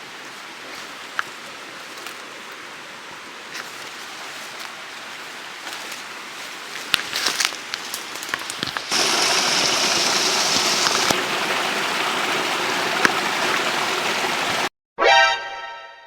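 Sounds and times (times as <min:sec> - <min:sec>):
stream water flowing: 0:00.0 - 0:14.7
musical note ringing: 0:15.0 - 0:16.0.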